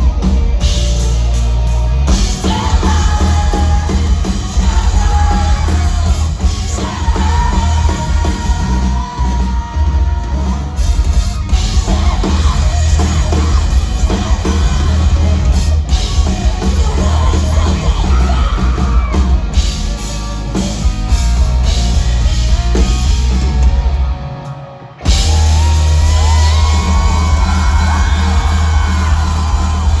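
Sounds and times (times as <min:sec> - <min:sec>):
person singing: 0:00.0 - 0:20.6
drums: 0:00.0 - 0:30.0
guitars: 0:00.0 - 0:30.0.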